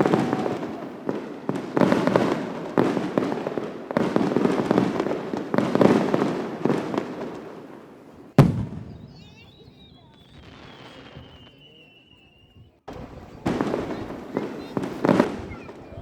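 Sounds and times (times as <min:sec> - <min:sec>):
fireworks crackling: 0:00.0 - 0:16.0
sharp firework bang: 0:08.4 - 0:11.0.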